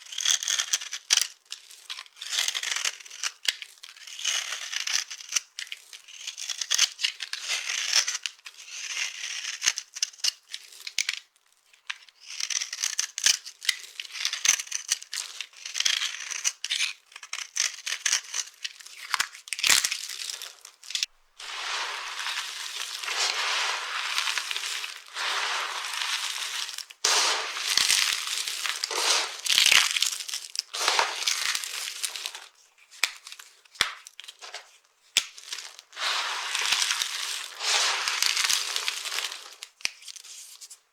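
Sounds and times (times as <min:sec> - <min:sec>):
dry soap crunching: 0:17.2 - 0:40.0.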